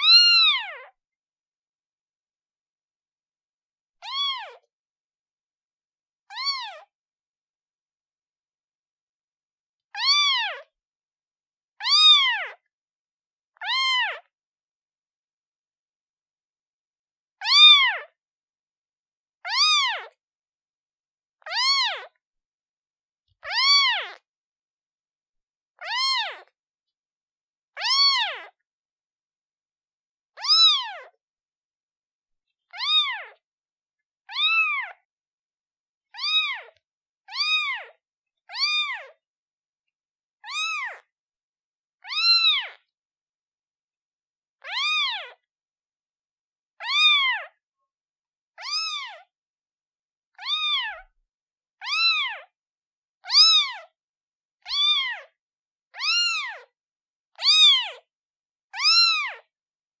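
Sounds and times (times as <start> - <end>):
kitten meowing: 0.0 - 0.9, 4.0 - 4.7, 6.3 - 6.8, 10.0 - 10.7, 11.8 - 12.6, 13.6 - 14.3, 17.4 - 18.0, 19.5 - 20.1, 21.5 - 22.1, 23.5 - 24.2, 25.8 - 26.5, 27.8 - 28.6, 30.4 - 31.2, 32.7 - 33.4, 34.3 - 35.0, 36.2 - 39.2, 40.4 - 41.1, 42.0 - 42.8, 44.6 - 45.4, 46.8 - 47.6, 48.6 - 49.3, 50.4 - 51.1, 51.8 - 52.5, 53.2 - 53.9, 54.7 - 55.3, 56.0 - 56.7, 57.4 - 58.0, 58.8 - 59.4.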